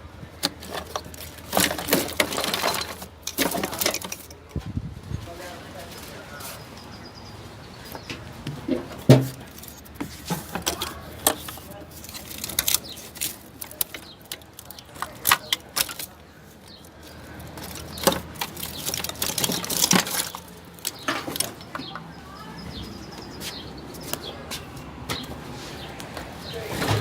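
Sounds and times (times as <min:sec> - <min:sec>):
plastic connectors clicking and rattling: 0:00.4 - 0:04.5, 0:09.1 - 0:16.2, 0:17.0 - 0:21.5.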